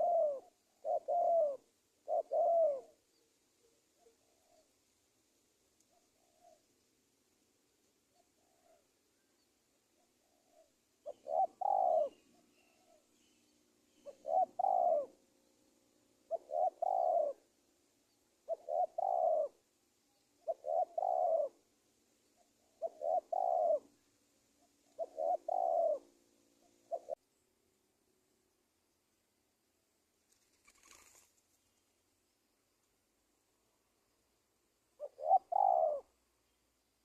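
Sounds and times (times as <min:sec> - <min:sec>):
dove cooing: 0:00.0 - 0:04.7, 0:05.9 - 0:06.7, 0:08.1 - 0:09.0, 0:09.9 - 0:15.2, 0:16.2 - 0:17.5, 0:18.4 - 0:19.6, 0:20.4 - 0:21.6, 0:22.3 - 0:24.0, 0:24.6 - 0:27.2, 0:35.0 - 0:36.2.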